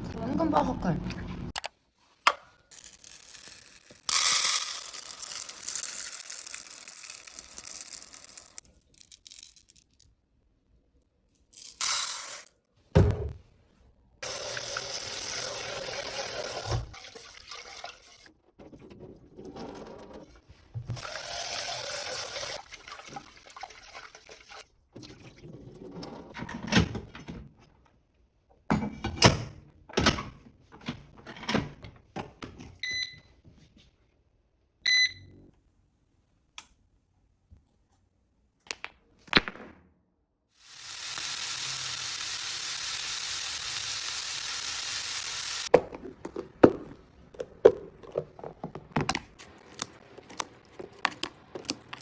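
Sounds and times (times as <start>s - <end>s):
water running from tap: 14.2s - 18.3s, 20.9s - 24.6s, 40.6s - 45.7s
electronic appliance beeps: 32.8s - 33.3s, 34.8s - 35.4s.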